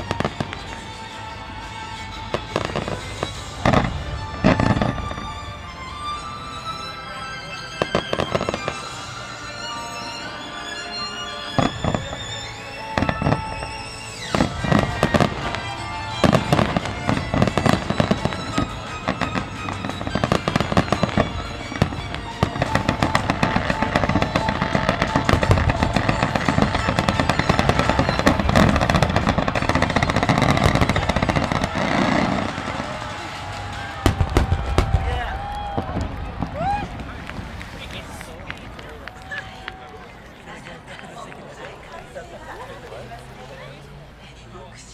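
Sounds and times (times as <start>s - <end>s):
music: 0.0s - 42.2s
fireworks crackling barrage: 0.0s - 44.9s
firework shells bursting: 11.6s - 39.3s.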